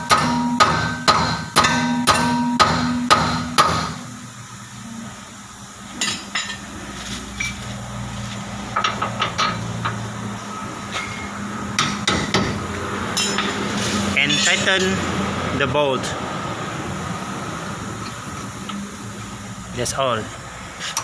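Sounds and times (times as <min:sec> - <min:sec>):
hammer striking metal: 0:00.0 - 0:04.2, 0:08.8 - 0:10.0, 0:11.0 - 0:13.6.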